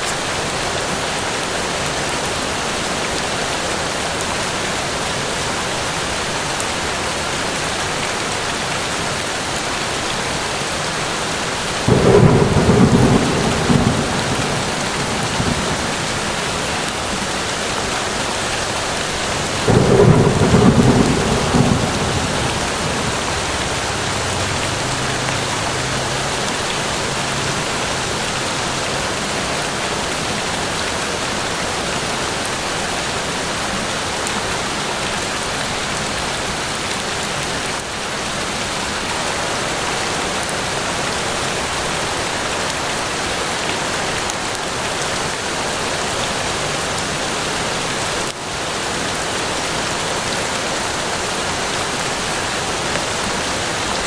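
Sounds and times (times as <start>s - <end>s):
steady rain falling: 0.0s - 54.0s
deep thunder peals: 11.8s - 18.4s, 19.0s - 29.8s.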